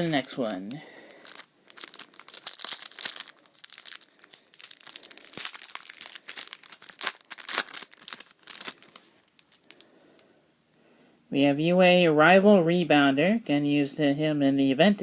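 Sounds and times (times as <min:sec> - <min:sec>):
foil wrapper crinkling and tearing: 0:00.0 - 0:09.9.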